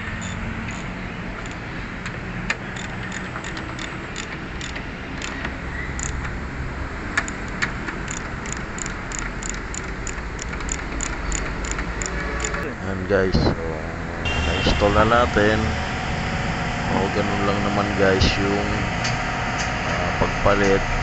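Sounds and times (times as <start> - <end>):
ratchet wrench clicking: 0.2 - 1.7, 2.7 - 6.3, 7.2 - 12.6.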